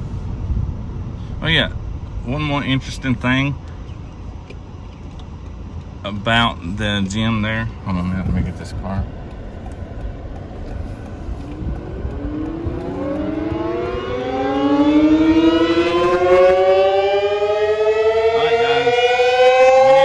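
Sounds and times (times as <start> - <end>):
tornado siren wail: 10.1 - 20.0.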